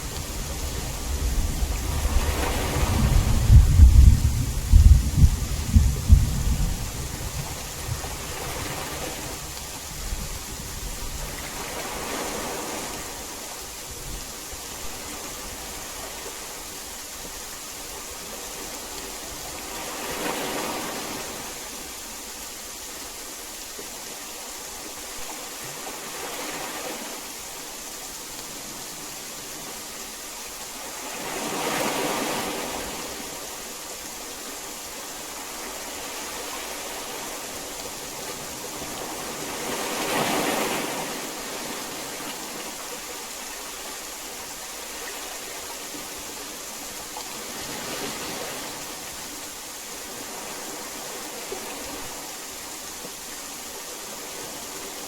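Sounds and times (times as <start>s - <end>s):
heavy rain hissing: 0.0s - 55.0s
low thunder rumble: 0.4s - 8.1s.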